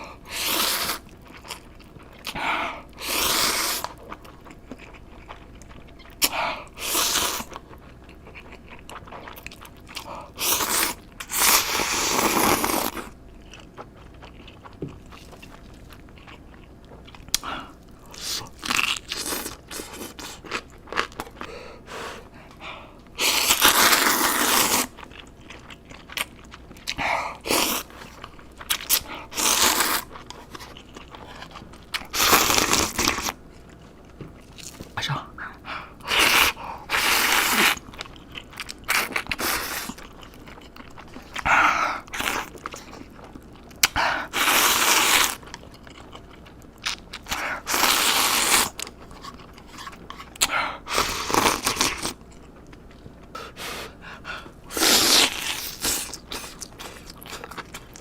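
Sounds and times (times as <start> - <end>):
quiet chewing: 0.0 - 58.0.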